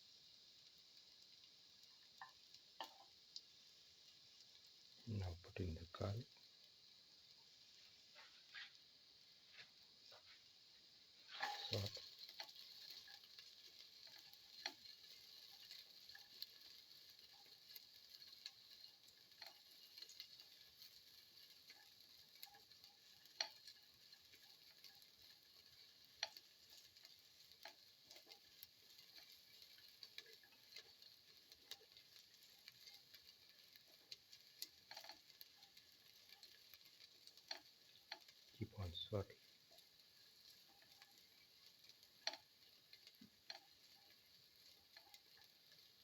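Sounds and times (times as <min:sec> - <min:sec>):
garlic sizzling in oil: 0:00.0 - 0:46.0
utensil clicking against pan: 0:01.1 - 0:03.5, 0:11.3 - 0:38.6, 0:39.4 - 0:46.0.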